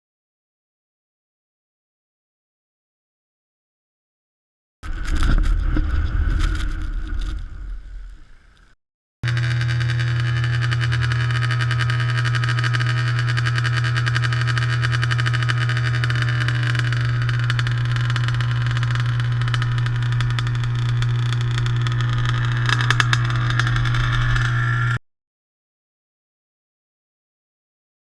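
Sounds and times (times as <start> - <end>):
dirt bike engine running: 9.2 - 25.0.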